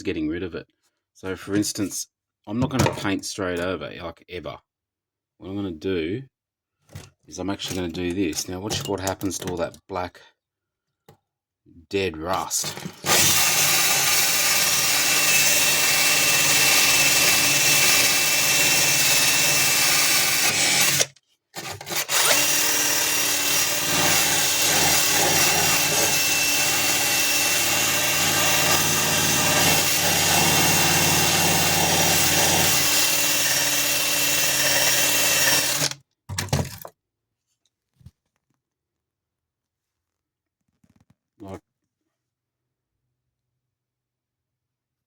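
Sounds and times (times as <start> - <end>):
power tool stripping rust whining: 12.4 - 36.0.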